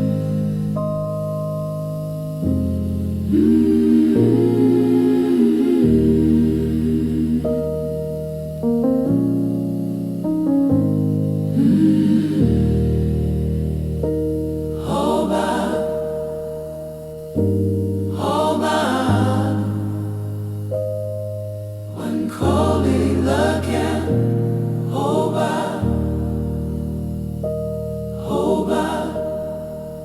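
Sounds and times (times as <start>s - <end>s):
choir singing gospel music: 3.3s - 7.6s, 11.5s - 13.9s, 14.7s - 17.1s, 18.0s - 20.7s, 21.9s - 27.3s, 28.1s - 30.0s.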